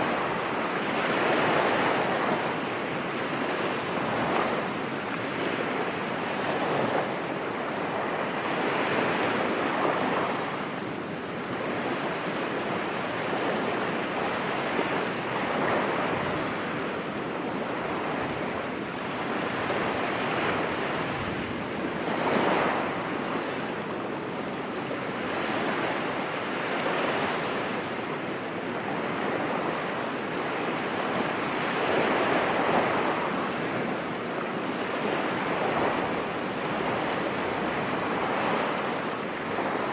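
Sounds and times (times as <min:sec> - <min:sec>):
sea waves breaking on beach: 0:00.0 - 0:39.9.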